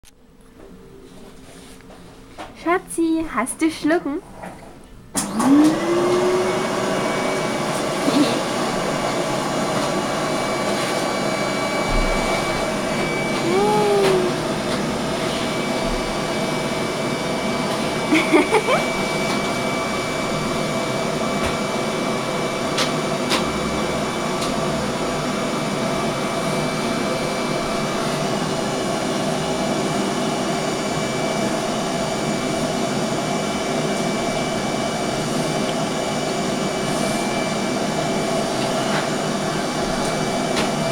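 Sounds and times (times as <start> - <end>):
electric motor drone: 11.5 - 21.2.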